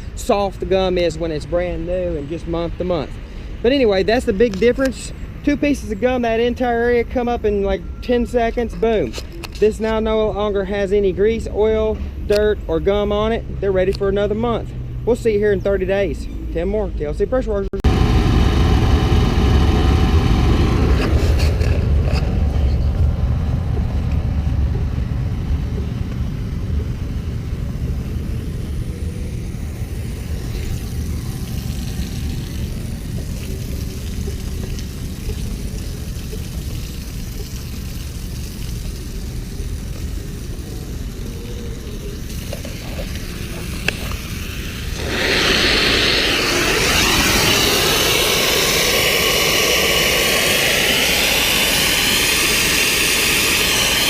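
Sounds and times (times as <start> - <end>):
pressure washer engine rumbling: 0.0 - 54.0
high-pressure water jet hissing: 17.9 - 22.6, 25.7 - 54.0.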